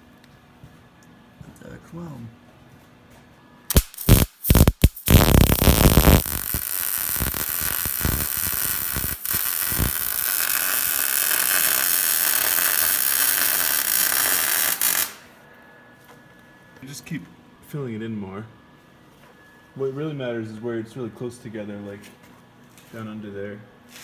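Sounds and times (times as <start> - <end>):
arc welding hiss: 3.7 - 15.4.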